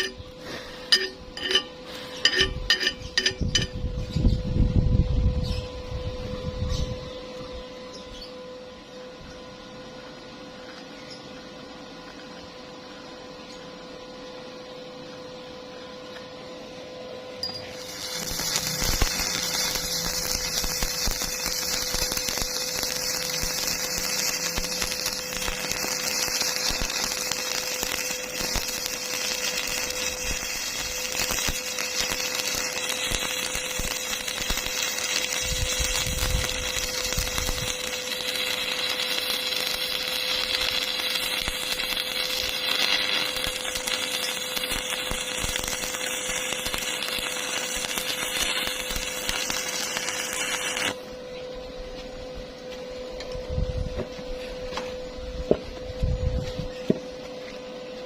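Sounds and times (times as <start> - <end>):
welding arc crackling: 0.0 - 3.8, 17.6 - 51.0
constant hum: 0.0 - 58.0.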